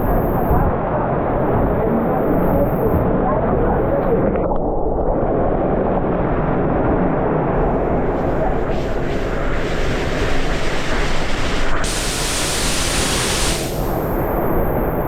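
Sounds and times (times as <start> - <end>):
waterfall rushing: 11.8 - 14.9.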